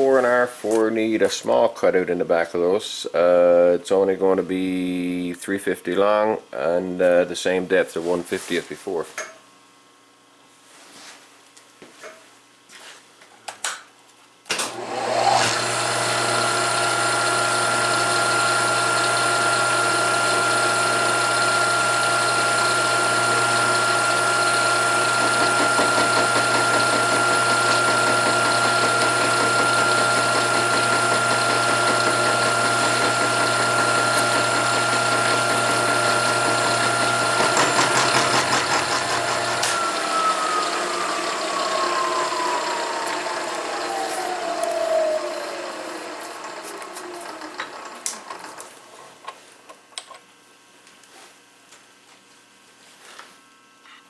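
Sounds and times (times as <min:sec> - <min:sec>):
milling machine whining: 0:14.6 - 0:49.1.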